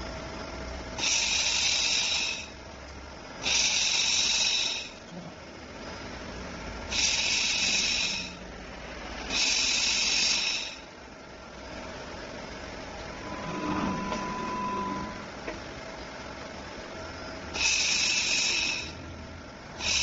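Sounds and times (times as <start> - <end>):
machine whine: 0.0 - 20.0
thin held tone: 12.8 - 15.6.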